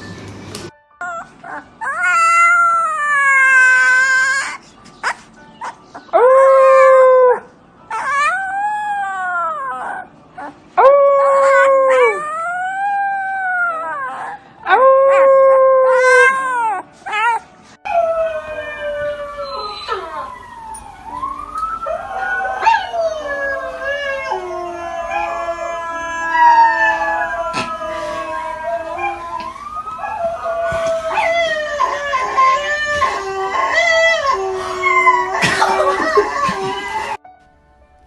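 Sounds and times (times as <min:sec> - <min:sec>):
dog howling: 0:01.0 - 0:04.6, 0:06.0 - 0:37.2.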